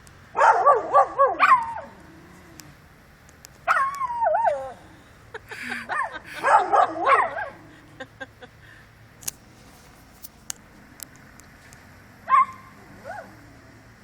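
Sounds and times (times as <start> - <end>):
dog barking: 0.4 - 1.9, 3.7 - 4.7, 5.9 - 7.6, 12.3 - 13.4
dog yelping: 0.4 - 2.1, 3.7 - 4.9, 5.9 - 7.7, 12.3 - 13.4.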